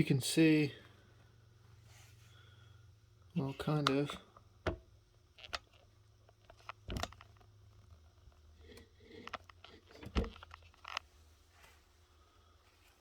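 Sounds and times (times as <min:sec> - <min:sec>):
soft scraping and rustling: 0:01.6 - 0:02.4, 0:07.7 - 0:13.0.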